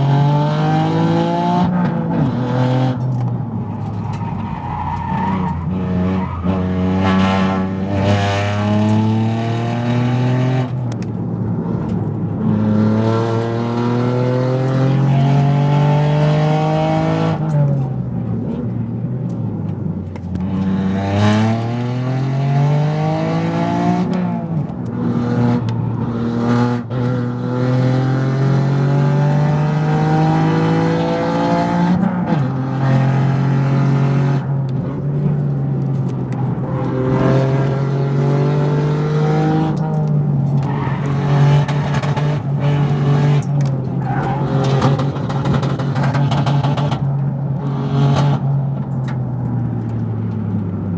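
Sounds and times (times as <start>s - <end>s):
car engine accelerating hard: 0.0s - 50.9s.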